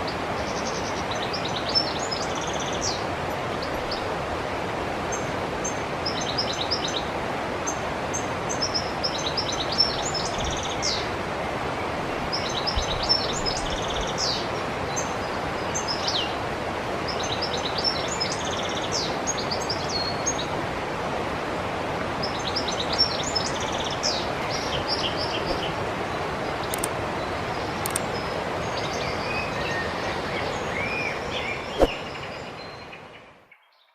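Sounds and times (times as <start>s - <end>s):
river running: 0.0s - 33.4s
birds chirping: 22.2s - 33.1s
sharp click: 26.7s - 26.9s.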